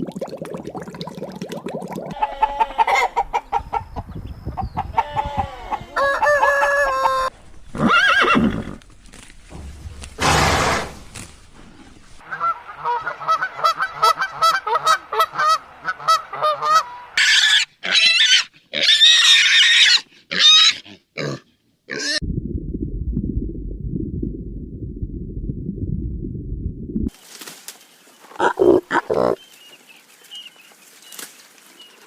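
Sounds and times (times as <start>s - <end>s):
pigs squealing: 17.2s - 22.2s, 28.4s - 29.4s
low rumbling noise: 22.2s - 27.1s.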